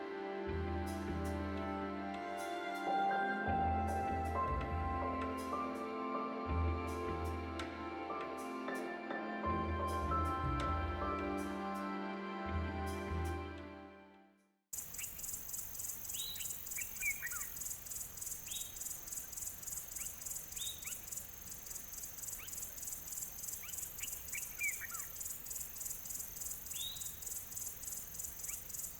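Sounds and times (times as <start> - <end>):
bird chirping: 14.8 - 28.9
insects trilling: 14.8 - 28.9.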